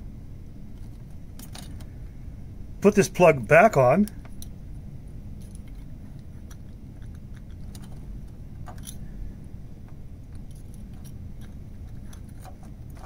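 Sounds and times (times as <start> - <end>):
cable connector clicks and rattles: 5.4 - 9.0.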